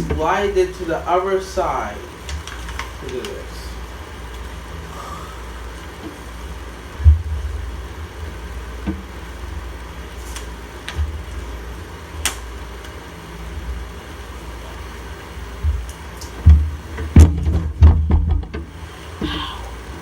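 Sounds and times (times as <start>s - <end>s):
steady low rumble: 0.0s - 20.0s
low thump: 7.0s - 7.6s, 16.4s - 18.7s
plastic parts knocks and clicks: 15.6s - 18.7s.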